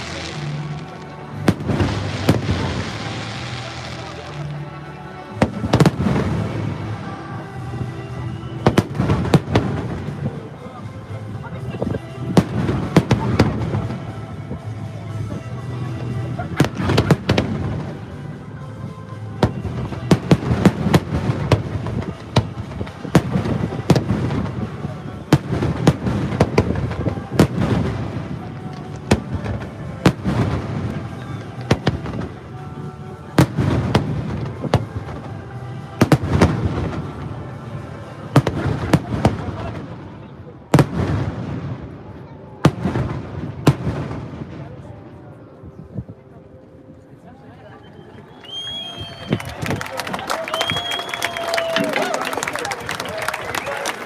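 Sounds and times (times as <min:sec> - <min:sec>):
fireworks exploding: 0:00.0 - 0:10.4, 0:12.3 - 0:14.6, 0:16.0 - 0:18.0, 0:19.4 - 0:42.0, 0:42.6 - 0:44.8
music: 0:00.0 - 0:54.0
voices: 0:00.0 - 0:54.0.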